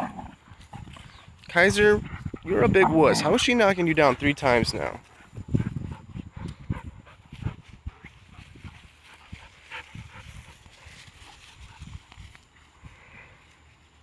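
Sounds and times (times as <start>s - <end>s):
dogs growling and grunting: 0.0s - 1.0s, 2.4s - 3.6s.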